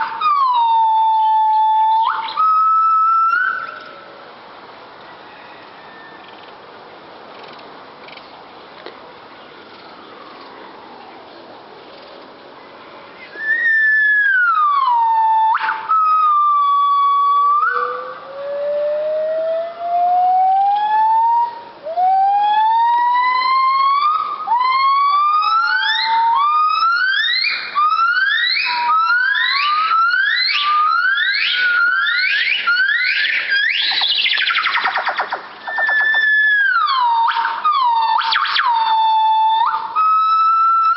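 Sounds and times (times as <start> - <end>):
gibbon whooping call: 0.0 - 4.0, 13.2 - 40.9.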